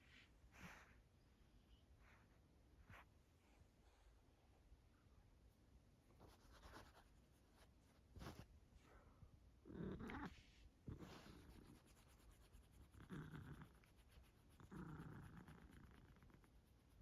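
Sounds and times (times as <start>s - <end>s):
cat snoring softly: 12.8s - 16.8s.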